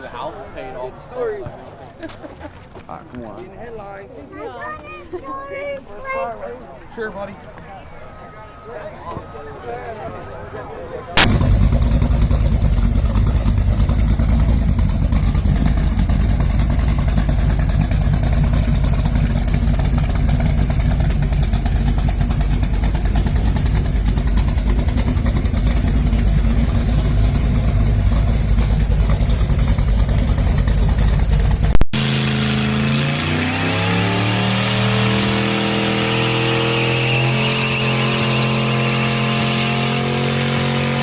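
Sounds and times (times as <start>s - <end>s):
car engine running loud: 11.2s - 41.0s.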